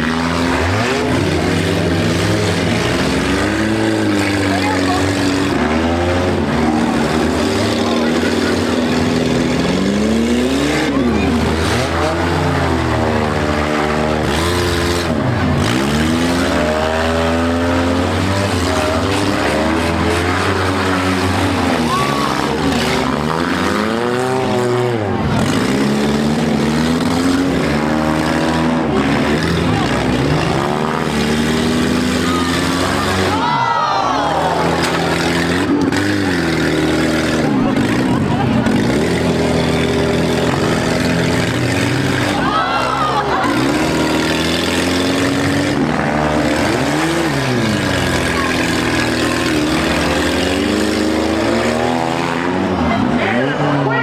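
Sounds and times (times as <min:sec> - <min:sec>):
car engines revving: 0:00.0 - 0:54.0
crowd noise: 0:00.0 - 0:54.0.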